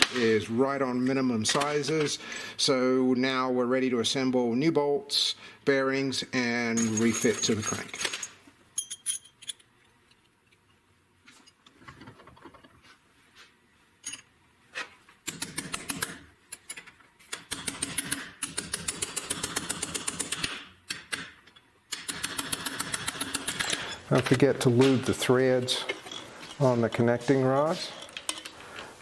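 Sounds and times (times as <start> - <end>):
hand ratchet clicking: 15.3 - 23.9.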